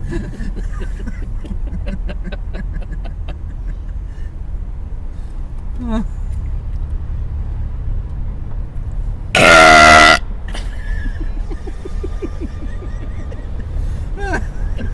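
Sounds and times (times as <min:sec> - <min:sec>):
car engine rumble: 0:00.0 - 0:09.5, 0:10.2 - 0:14.9
road noise: 0:00.0 - 0:14.9
person belching loudly: 0:09.4 - 0:10.2.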